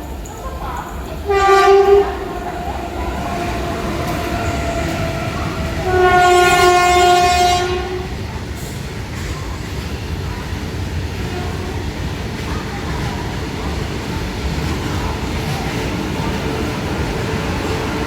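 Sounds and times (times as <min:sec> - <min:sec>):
train horn blasts: 0:01.3 - 0:08.1.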